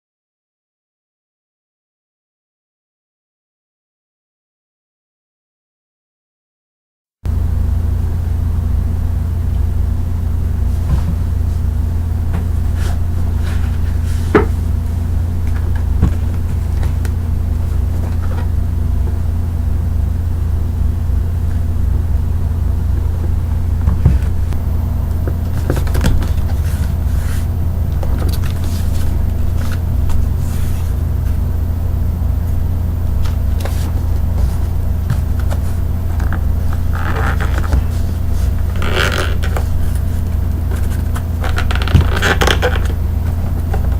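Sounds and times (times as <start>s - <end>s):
steady low hum: 7.3s - 43.9s
bubble wrap crinkling: 33.2s - 43.6s.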